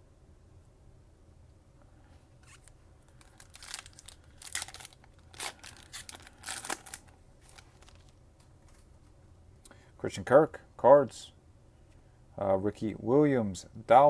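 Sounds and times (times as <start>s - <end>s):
plastic wrapper crinkling and tearing: 2.4s - 8.8s.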